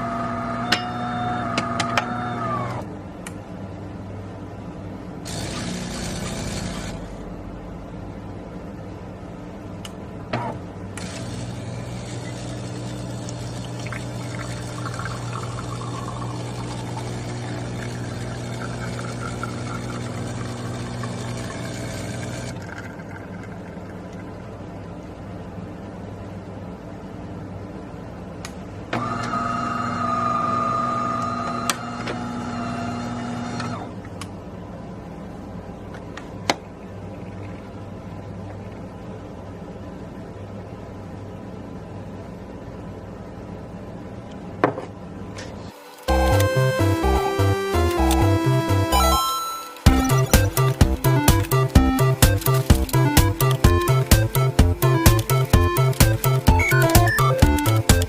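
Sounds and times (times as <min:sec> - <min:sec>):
espresso machine motor whine: 0:00.0 - 0:02.9, 0:05.3 - 0:07.2, 0:11.0 - 0:23.6, 0:29.0 - 0:33.9
water pump buzzing: 0:05.3 - 0:07.2, 0:11.0 - 0:23.6, 0:49.9 - 0:58.0
water pouring: 0:13.5 - 0:24.3.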